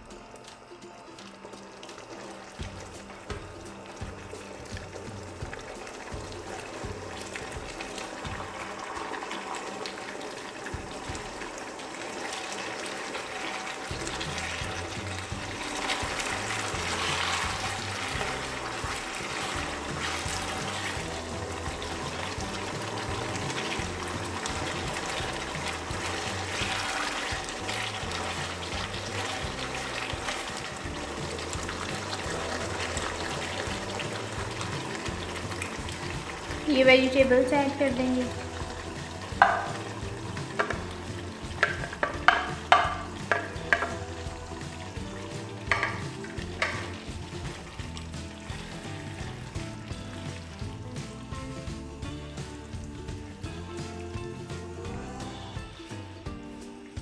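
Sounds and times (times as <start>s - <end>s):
background music with bass: 0.0s - 9.4s, 13.5s - 57.0s
sauce simmering and sizzling: 0.0s - 57.0s.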